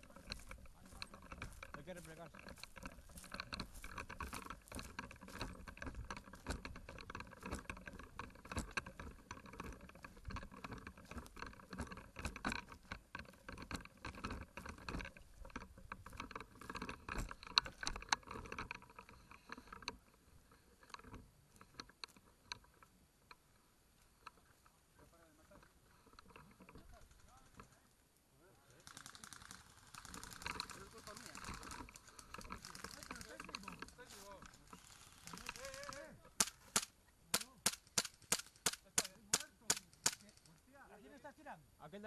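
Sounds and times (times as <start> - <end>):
footsteps: 0.0 - 22.7
small knocks and clicks: 0.0 - 27.9, 28.9 - 40.8
rustle of clothing and undergrowth: 0.0 - 38.7.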